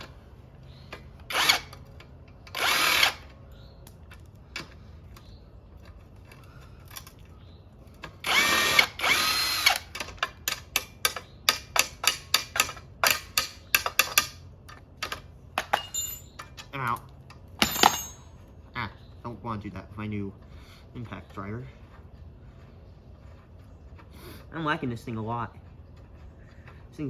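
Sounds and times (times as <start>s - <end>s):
impact driver running: 8.2s - 10.8s.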